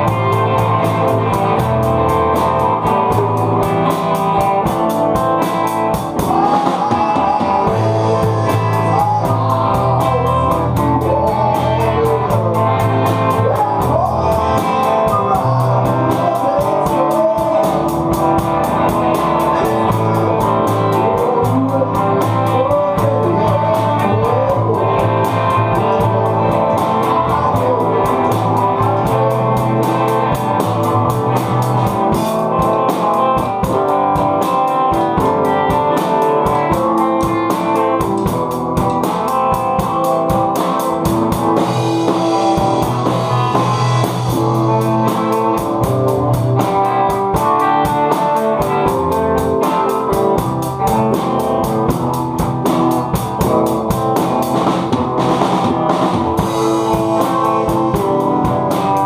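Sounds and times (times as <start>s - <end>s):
rock music with guitar and drums: 0.0s - 59.0s.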